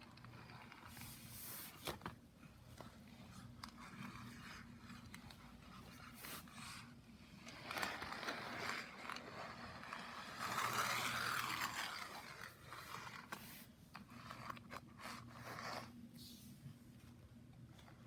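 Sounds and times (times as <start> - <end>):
toy cars rolling and scraping: 6.3 - 15.9.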